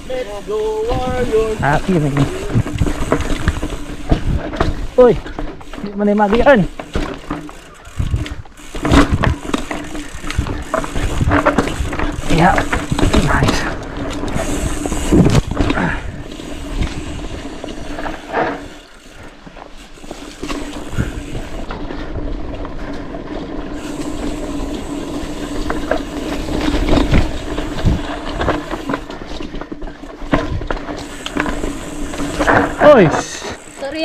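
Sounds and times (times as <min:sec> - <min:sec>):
bike rattling over bumps: 0:00.0 - 0:34.0
bike tyres rumbling on dirt: 0:00.0 - 0:34.0
rear hub freewheel buzz: 0:05.6 - 0:21.7, 0:23.7 - 0:29.8, 0:30.9 - 0:34.0.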